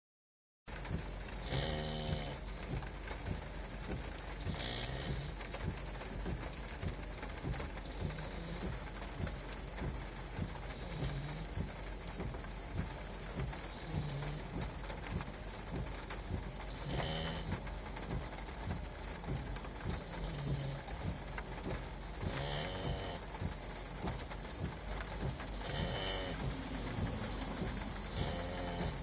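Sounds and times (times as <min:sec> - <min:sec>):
rain hissing: 0:00.7 - 0:29.0
puppy snoring: 0:13.8 - 0:14.4, 0:25.6 - 0:26.5, 0:28.1 - 0:29.0.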